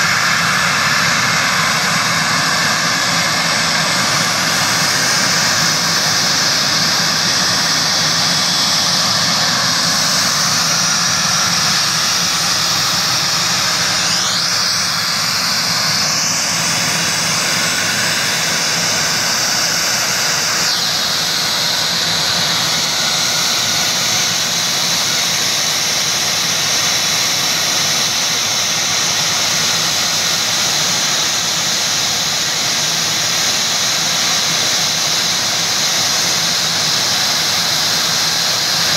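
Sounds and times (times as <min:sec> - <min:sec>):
jet engines running: 0:00.0 - 0:38.9
whine rising in pitch: 0:00.0 - 0:38.9.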